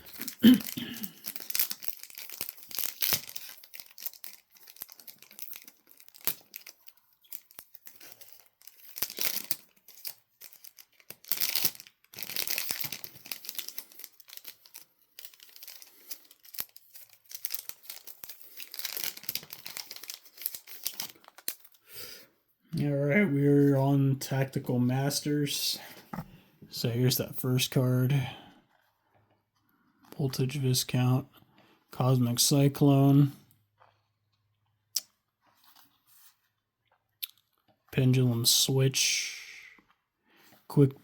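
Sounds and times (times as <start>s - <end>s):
foil wrapper tearing and crinkling: 0.0s - 21.8s.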